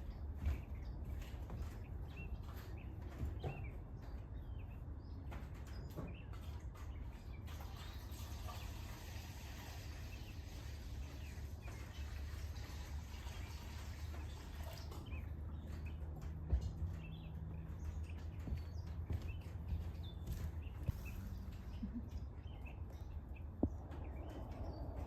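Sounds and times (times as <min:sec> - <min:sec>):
small birds chirping: 0:00.0 - 0:25.0
steady low rumble: 0:15.1 - 0:25.0.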